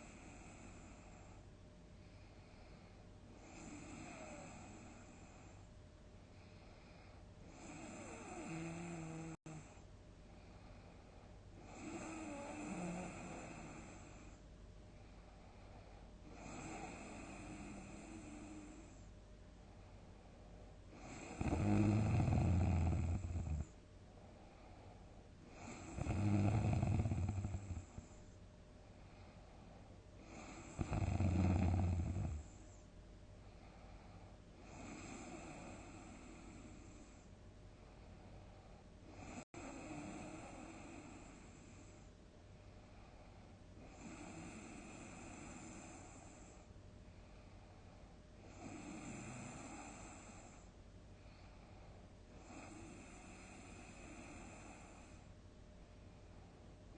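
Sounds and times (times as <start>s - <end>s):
soft breathy breath: 0.0s - 22.0s, 22.7s - 31.2s, 31.8s - 56.9s
person snoring: 7.5s - 9.6s, 11.6s - 14.1s, 21.0s - 23.7s, 25.5s - 28.0s, 30.3s - 32.5s.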